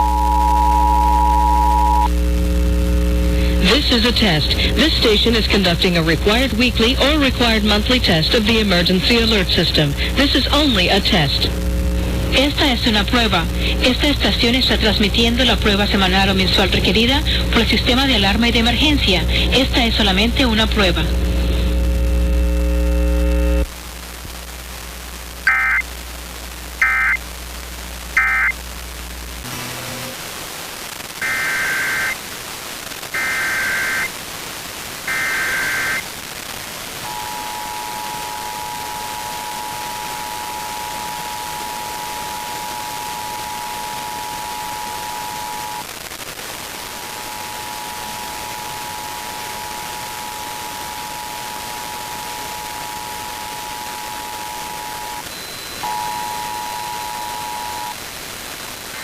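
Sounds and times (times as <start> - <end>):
radio hiss: 0.0 - 59.0
screeching data bursts: 25.5 - 25.8, 26.8 - 27.2, 28.2 - 28.6, 31.2 - 32.2, 33.2 - 34.1, 35.1 - 36.0
two-tone attention signal: 25.5 - 25.8, 26.8 - 27.2, 28.2 - 28.6, 51.5 - 58.0.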